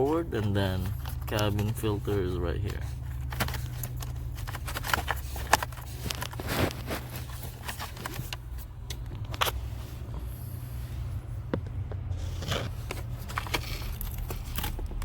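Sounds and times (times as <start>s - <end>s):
plastic scraping: 0.0s - 8.6s, 12.0s - 15.0s.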